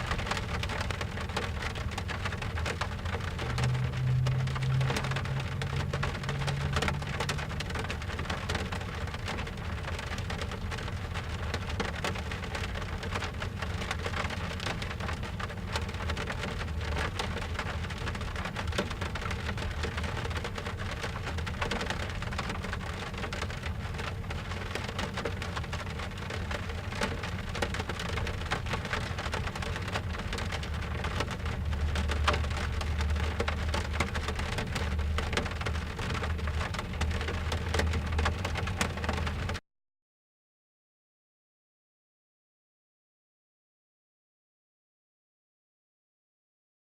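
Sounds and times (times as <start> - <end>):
low rumble: 0.0 - 9.7
rain drumming on car roof: 0.0 - 39.6.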